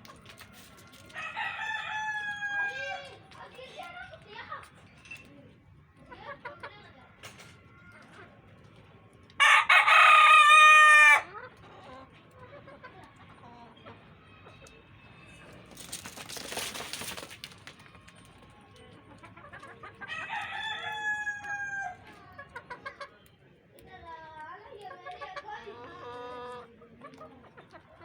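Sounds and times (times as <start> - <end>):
rooster crowing: 9.4 - 11.3.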